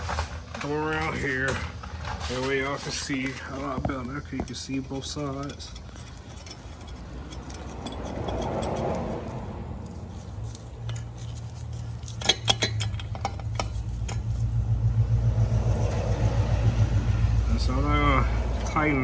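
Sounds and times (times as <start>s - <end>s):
low rumble: 13.8s - 19.0s.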